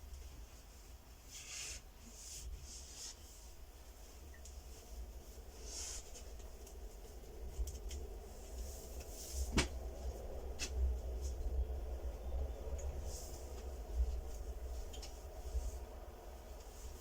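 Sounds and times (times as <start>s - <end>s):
low rumble: 4.6s - 17.0s.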